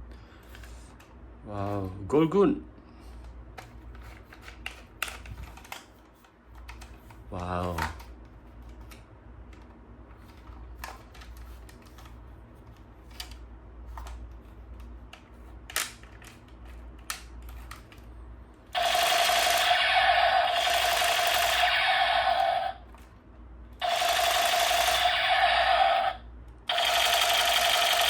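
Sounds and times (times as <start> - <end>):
plastic toy gun clicks: 4.3 - 5.9.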